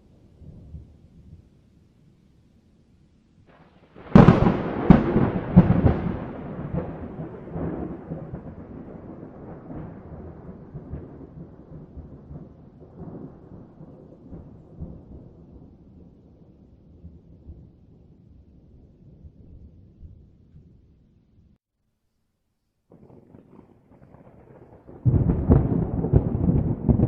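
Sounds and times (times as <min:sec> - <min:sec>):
thunder cracks: 0:03.5 - 0:15.8, 0:22.9 - 0:27.0
rolling thunder rumble: 0:03.5 - 0:20.9, 0:22.9 - 0:27.0.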